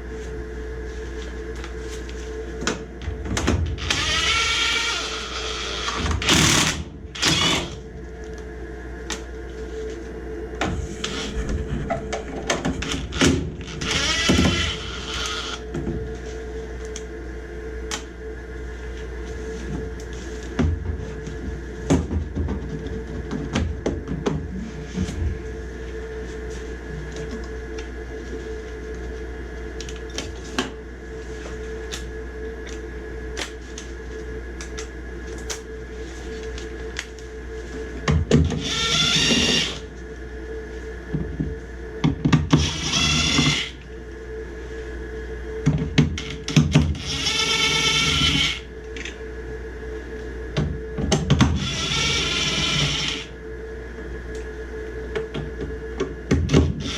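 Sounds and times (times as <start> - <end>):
steady hum: 0.0 - 56.9
cordless drill driving screws: 13.8 - 15.6, 42.6 - 43.7.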